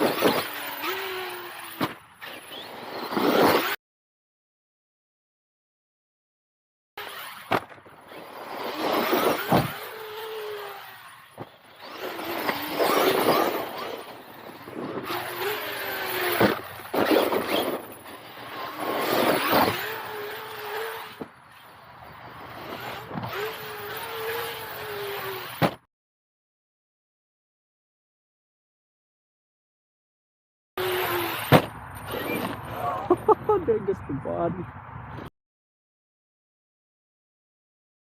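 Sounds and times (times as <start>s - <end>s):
electric motor whine: 0.0s - 3.8s, 7.0s - 25.7s, 30.8s - 32.8s.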